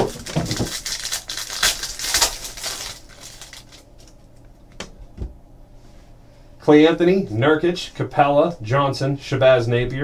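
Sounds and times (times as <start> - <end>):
card pack wrappers tearing and crinkling: 0.0 - 4.2.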